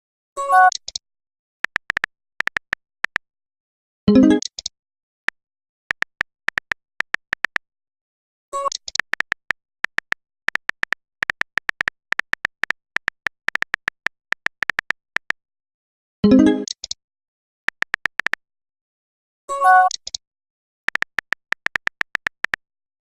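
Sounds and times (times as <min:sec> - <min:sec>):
phone keyboard taps: 0:01.6 - 0:03.2, 0:05.9 - 0:07.6, 0:08.7 - 0:15.4, 0:17.7 - 0:18.4, 0:20.9 - 0:22.6.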